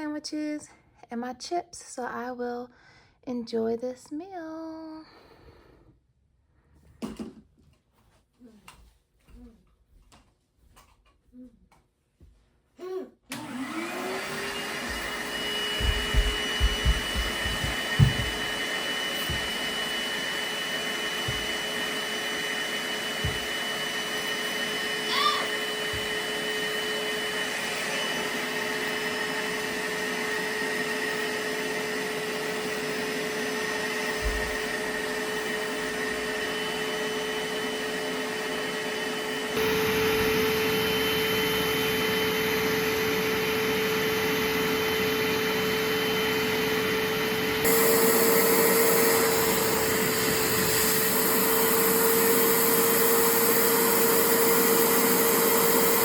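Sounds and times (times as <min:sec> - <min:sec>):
vacuum cleaner motor whining: 0:13.3 - 0:56.0.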